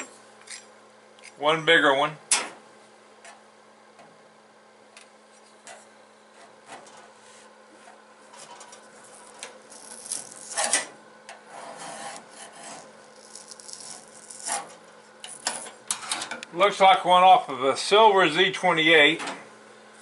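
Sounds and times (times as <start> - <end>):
stickers scraped off metal: 9.0 - 10.9, 11.5 - 16.2.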